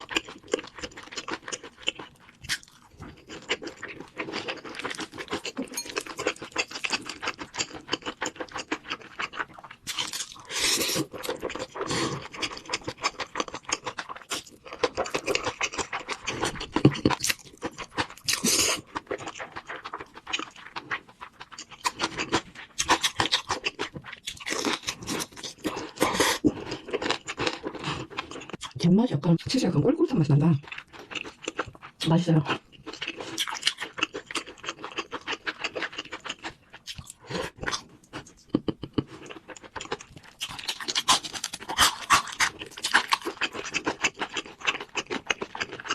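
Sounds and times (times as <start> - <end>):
crunching and wet chewing: 0.0 - 28.8, 30.6 - 45.9
mouth noises: 38.4 - 39.1.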